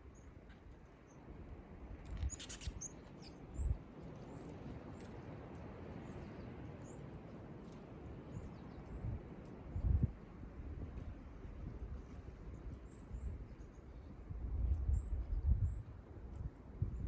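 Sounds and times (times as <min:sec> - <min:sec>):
small birds chirping: 0:02.1 - 0:05.1.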